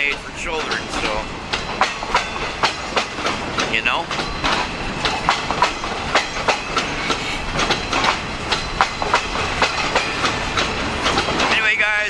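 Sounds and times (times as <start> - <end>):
train rolling rumble: 0.0 - 12.0
train wheels clicking over rail joints: 0.0 - 12.0.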